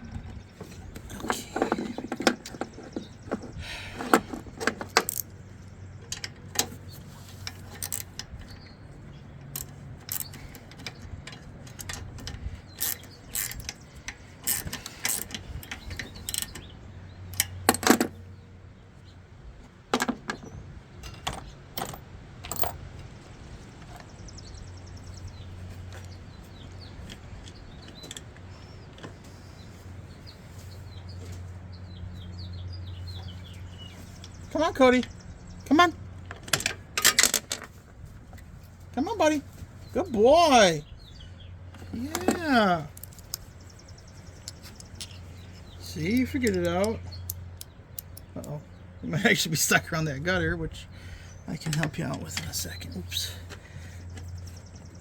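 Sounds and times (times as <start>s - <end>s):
metal tools clinking: 0.6s - 5.4s, 6.0s - 8.7s, 9.4s - 16.6s, 20.0s - 22.9s, 41.8s - 43.6s.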